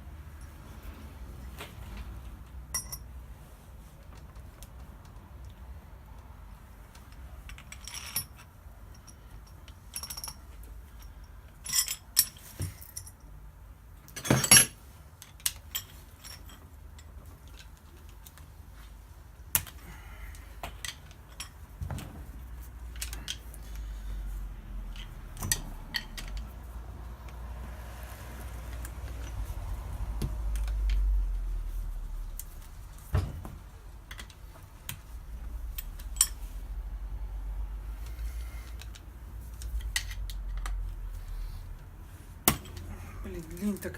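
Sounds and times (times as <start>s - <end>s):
metal tools clinking and knocking: 2.7s - 3.1s, 7.5s - 13.3s, 14.1s - 17.6s, 35.6s - 36.6s.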